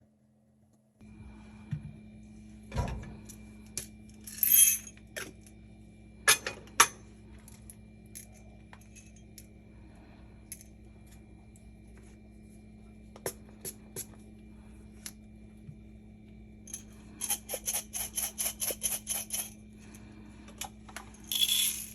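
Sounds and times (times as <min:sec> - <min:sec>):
low hum: 0:00.0 - 0:17.4
jingling rattle: 0:21.1 - 0:21.9
metal and glass clinks: 0:21.3 - 0:21.9.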